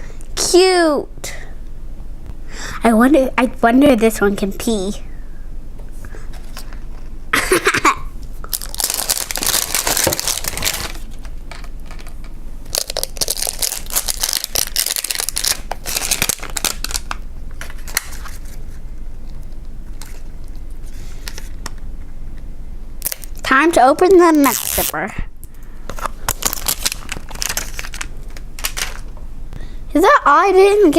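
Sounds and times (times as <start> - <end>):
plastic wrapping crinkling and tearing: 8.4 - 18.7, 23.0 - 23.4, 24.3 - 25.0, 25.9 - 29.1.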